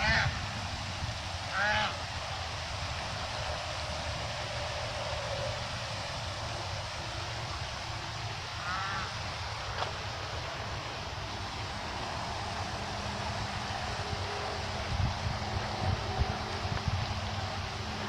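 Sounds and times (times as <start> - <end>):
goose honking: 0.0 - 0.4, 1.5 - 2.0, 8.6 - 9.2
steady background noise: 0.0 - 18.0.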